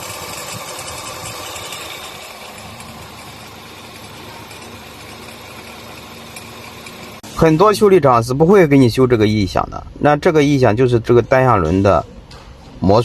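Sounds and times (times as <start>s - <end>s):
car engine idling with abnormal noise: 0.0s - 7.5s.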